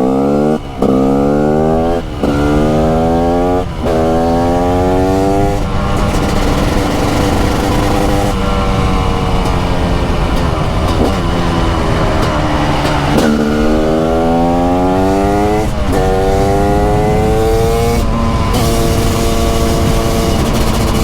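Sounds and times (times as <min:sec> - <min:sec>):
two-stroke motorcycle engine revving: 0:00.0 - 0:21.0.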